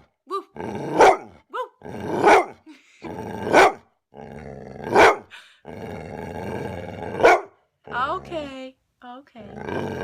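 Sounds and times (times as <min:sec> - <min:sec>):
dog growling: 0:00.4 - 0:08.6, 0:09.4 - 0:10.0
dog barking: 0:01.0 - 0:01.3, 0:02.2 - 0:02.6, 0:03.5 - 0:03.8, 0:05.0 - 0:05.3, 0:07.2 - 0:07.6.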